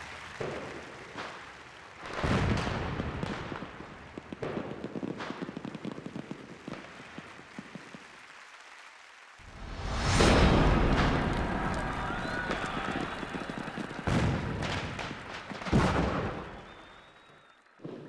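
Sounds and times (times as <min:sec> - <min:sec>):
firework crackling: 0:00.0 - 0:17.6
firework bursts: 0:09.5 - 0:17.6.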